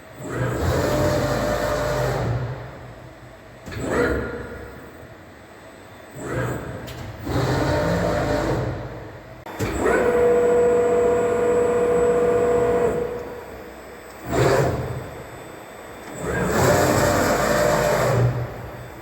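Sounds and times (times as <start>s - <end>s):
motor whine: 6.2s - 19.0s.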